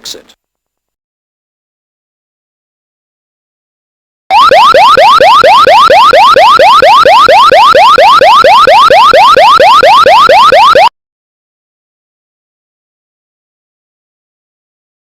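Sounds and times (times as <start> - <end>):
fire alarm rising sweep tone: 4.3 - 10.9.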